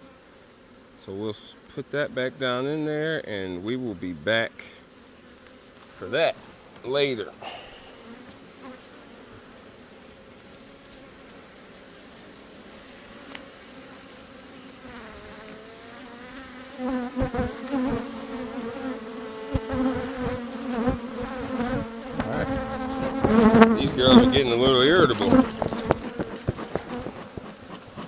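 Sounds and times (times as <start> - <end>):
bees buzzing: 0.0 - 28.0
dull bumps: 20.8 - 28.0.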